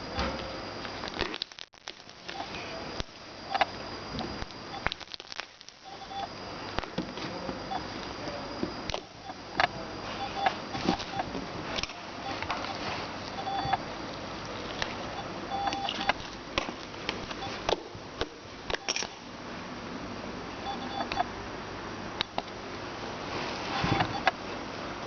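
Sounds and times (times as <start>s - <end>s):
sharp clicks and pops: 0.2s - 7.1s, 8.9s - 9.7s, 15.6s - 19.2s, 22.2s - 22.6s
slime being squeezed: 4.8s - 5.8s
short electronic beeps: 5.8s - 6.3s, 10.2s - 11.3s, 13.4s - 13.8s, 15.1s - 16.2s, 20.6s - 21.3s.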